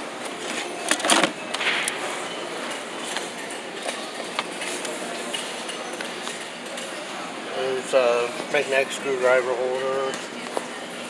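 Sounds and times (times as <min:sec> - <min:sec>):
busy store background noise: 0:00.0 - 0:11.0.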